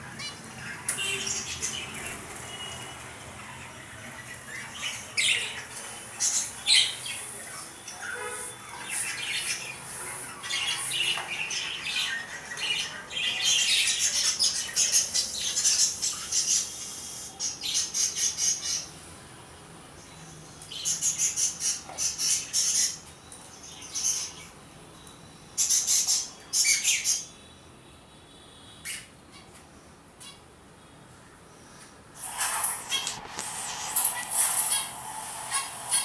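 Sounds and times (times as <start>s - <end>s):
birds chirping and squawking: 0.0s - 19.0s, 32.2s - 36.0s.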